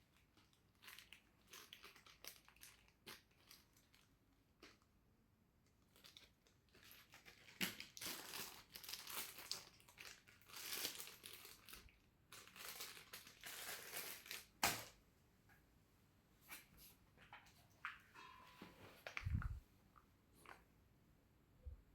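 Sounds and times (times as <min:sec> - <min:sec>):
plastic packaging crinkling: 0:00.0 - 0:04.1, 0:05.9 - 0:15.0.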